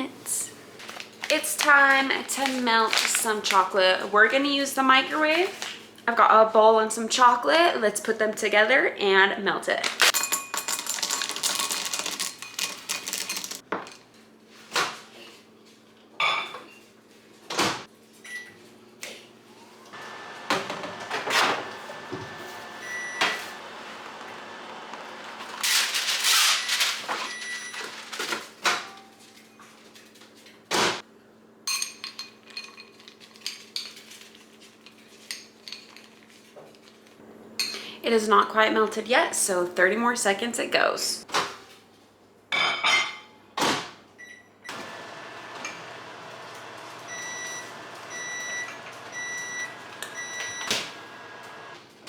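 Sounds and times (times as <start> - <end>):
kitchen clinks and knocks: 10.1 - 14.1
chocolate pieces rattling into bowl: 10.5 - 13.6
microwave oven humming: 18.2 - 25.6, 44.2 - 52.0.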